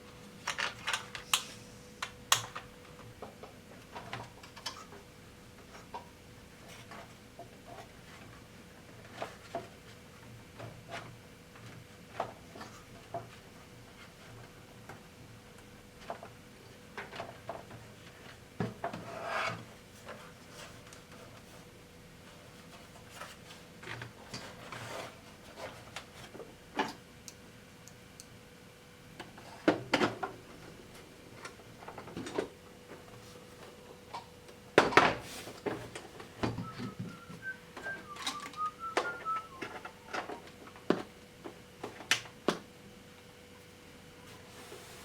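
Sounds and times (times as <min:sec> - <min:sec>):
faint steady hum: 0:00.0 - 0:45.0
faint high tones: 0:36.6 - 0:40.5.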